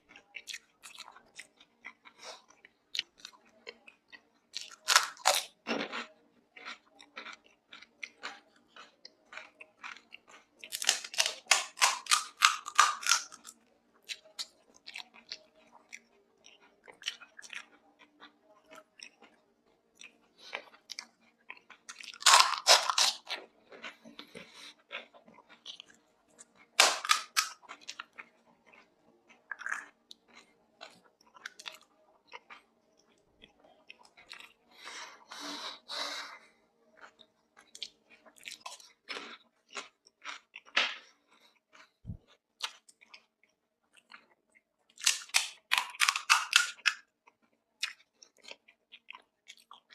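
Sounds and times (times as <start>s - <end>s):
crisp shells crunching: 10.7s - 13.5s, 22.2s - 23.3s, 26.8s - 27.6s, 45.0s - 47.0s
wet chewing clicks: 41.4s - 49.9s.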